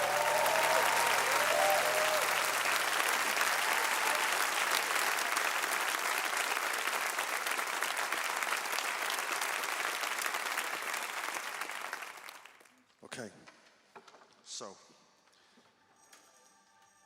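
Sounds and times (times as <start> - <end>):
audience applauding: 0.0 - 12.7.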